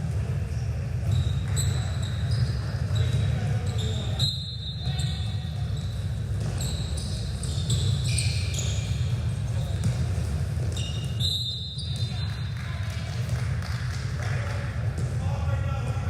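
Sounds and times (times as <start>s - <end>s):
sneakers squeaking on floor: 0.8s - 12.7s.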